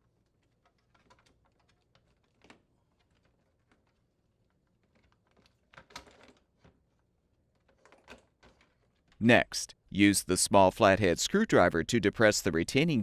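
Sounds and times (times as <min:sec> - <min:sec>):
faint plastic clicks and knocks: 0:00.0 - 0:09.2
plastic clatter: 0:00.3 - 0:04.0, 0:04.7 - 0:09.2.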